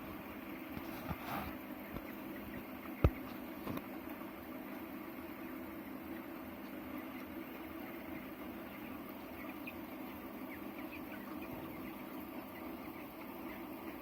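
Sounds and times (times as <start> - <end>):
chickens giving short calls: 0.1 - 14.0.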